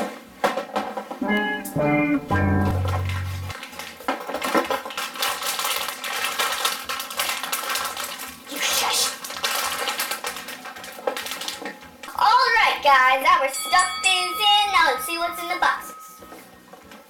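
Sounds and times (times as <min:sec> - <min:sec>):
crinkling and rustling: 0:02.8 - 0:08.4, 0:09.2 - 0:11.9.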